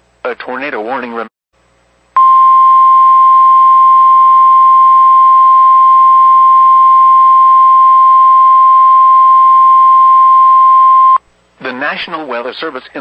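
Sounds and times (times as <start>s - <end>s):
steady alarm tone: 2.2s - 11.2s.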